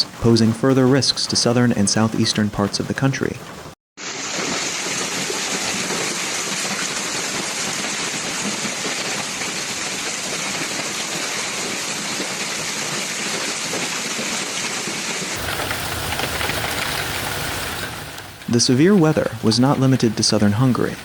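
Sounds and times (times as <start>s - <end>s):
heavy rain pouring: 0.0s - 21.0s
deep rumble: 15.4s - 19.4s.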